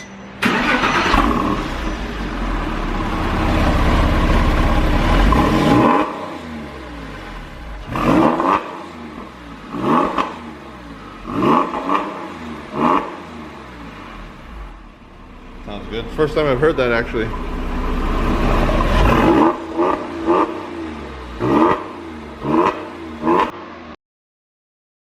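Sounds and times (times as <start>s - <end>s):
engine throttle blips: 0.0s - 23.0s
car engine idling: 0.4s - 8.1s, 8.8s - 23.0s.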